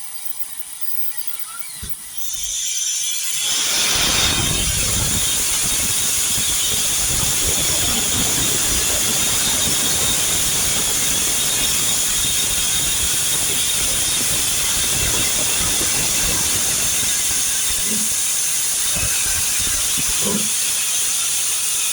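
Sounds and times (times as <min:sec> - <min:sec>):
loud hiss of steam: 0:02.4 - 0:21.9.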